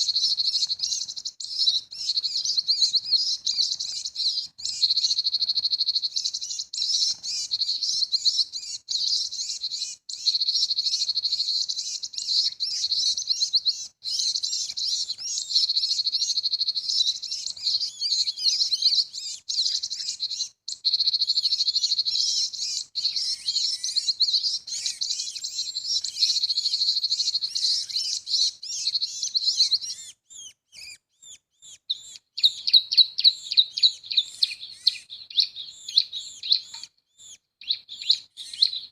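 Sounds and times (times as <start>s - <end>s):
bird call chirping through speaker: 11.7s - 38.9s.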